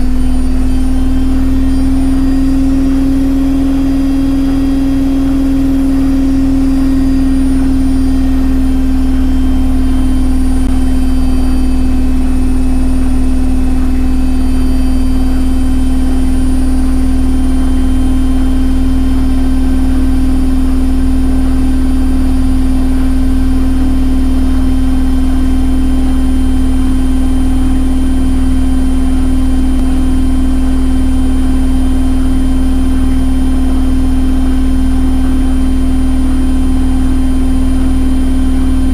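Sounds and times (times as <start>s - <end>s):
washing machine running: 0.0s - 38.9s.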